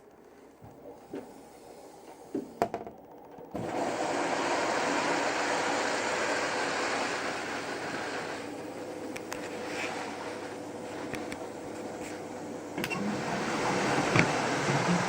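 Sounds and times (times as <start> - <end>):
washing machine clicks: 12.8 - 15.0
water rushing into drum: 13.0 - 15.0.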